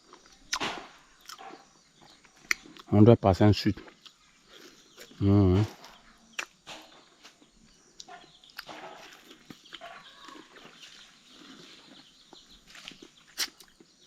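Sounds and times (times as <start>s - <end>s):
faint animal calls: 9.7s - 10.9s.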